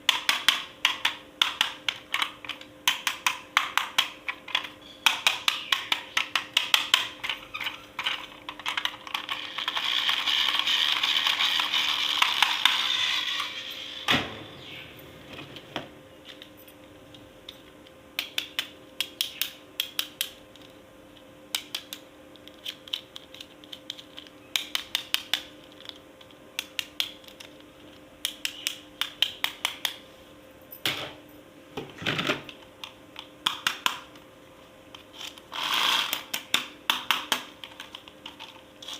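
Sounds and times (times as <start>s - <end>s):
plastic toys clicking and tapping: 0.1s - 13.1s, 21.5s - 30.0s, 32.4s - 34.1s, 35.9s - 38.9s.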